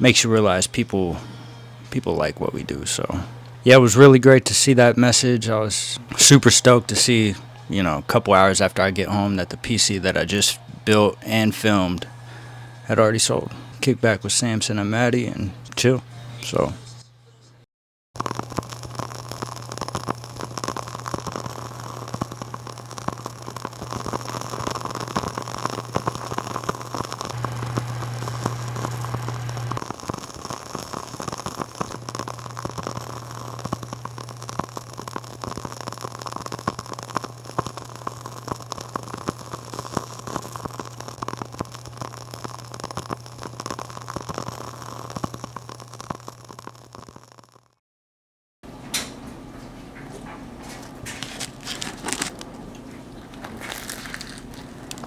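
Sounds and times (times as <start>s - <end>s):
dense crackling: 0.0s - 16.7s, 18.2s - 47.8s, 51.1s - 55.0s
steady hiss: 0.0s - 16.9s, 18.2s - 47.5s, 53.4s - 55.0s
low hum: 27.4s - 29.8s.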